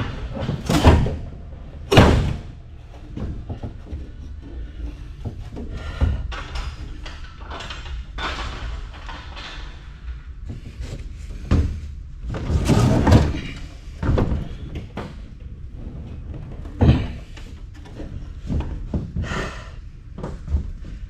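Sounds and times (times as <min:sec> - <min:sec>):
heavy metal knocks and bangs: 0:00.0 - 0:10.7
low steady rumble: 0:00.0 - 0:21.0.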